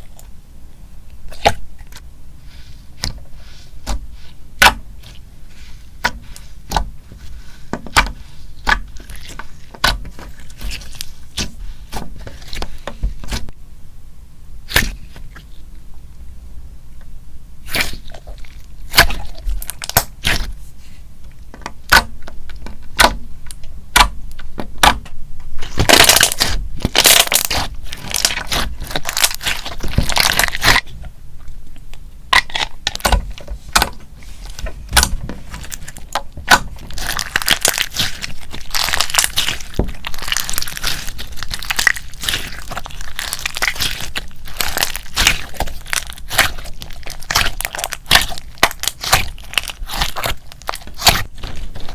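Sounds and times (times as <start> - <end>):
slime clicking and popping: 36.0 - 51.6.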